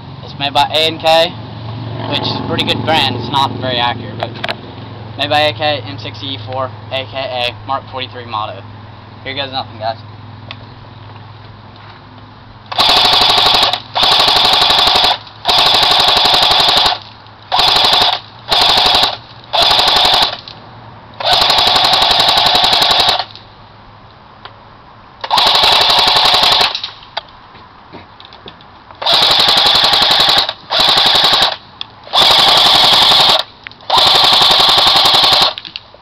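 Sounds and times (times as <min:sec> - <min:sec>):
airsoft gun rapid-fire clicking: 0:12.7 - 0:20.5, 0:21.2 - 0:23.4, 0:25.2 - 0:26.9, 0:29.0 - 0:35.8.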